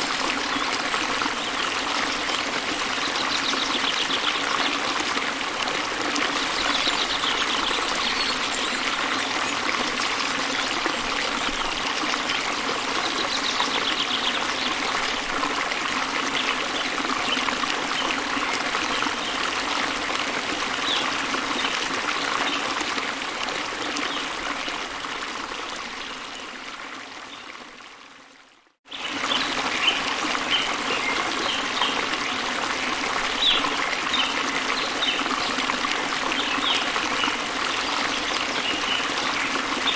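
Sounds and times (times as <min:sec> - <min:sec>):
small waterfall splashing: 0:00.0 - 0:39.9
bird chirps: 0:06.6 - 0:09.6.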